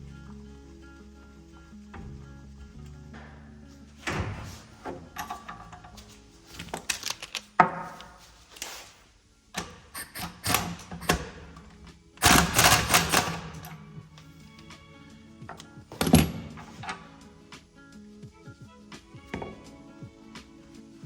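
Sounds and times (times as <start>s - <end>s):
background music: 0.0s - 21.0s
rapid rattling: 12.2s - 13.7s.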